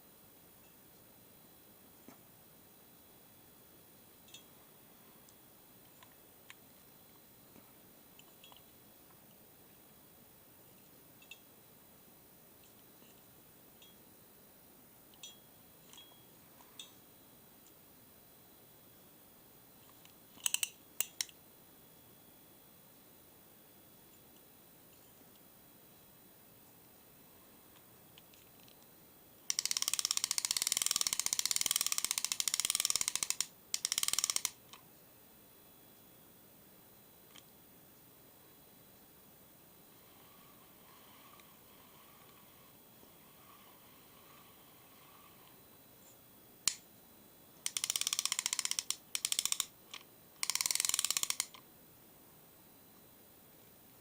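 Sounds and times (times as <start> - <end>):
spinning reel ratchet clicking: 29.5 - 34.6, 47.6 - 49.7, 50.4 - 51.6.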